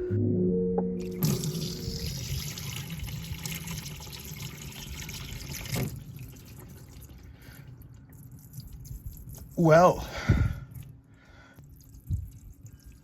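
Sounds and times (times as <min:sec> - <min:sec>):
dripping oil: 0:01.1 - 0:13.0
oil pouring into a pan: 0:01.2 - 0:09.4.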